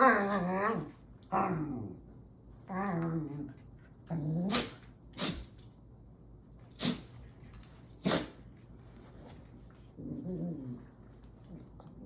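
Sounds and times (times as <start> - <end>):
dog sneezing: 4.5 - 5.6, 6.7 - 7.2, 8.0 - 8.4.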